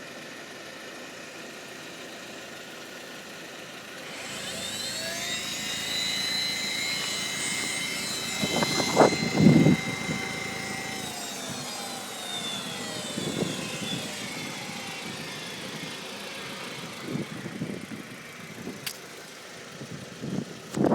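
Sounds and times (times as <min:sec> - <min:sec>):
high-pitched pump whine: 0:00.0 - 0:20.9
car engine running: 0:01.2 - 0:20.9.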